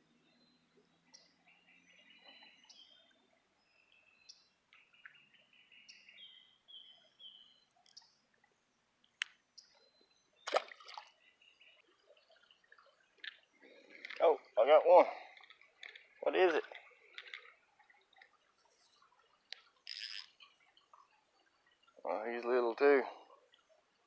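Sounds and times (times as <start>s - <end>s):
bird chirping: 0.2s - 8.2s.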